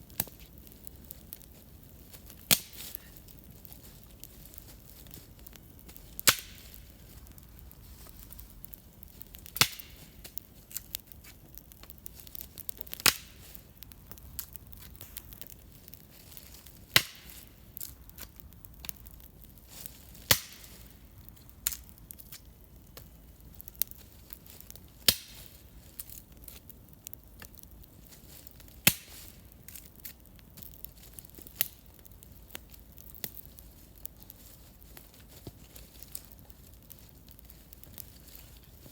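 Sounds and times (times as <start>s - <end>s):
campfire crackling and popping: 0.0s - 38.9s.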